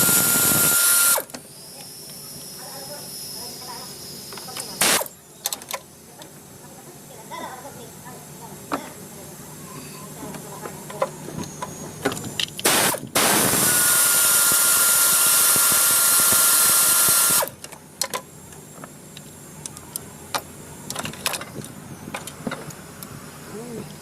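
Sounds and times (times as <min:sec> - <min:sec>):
air tool hissing and whining: 0:00.0 - 0:05.2, 0:11.3 - 0:17.6.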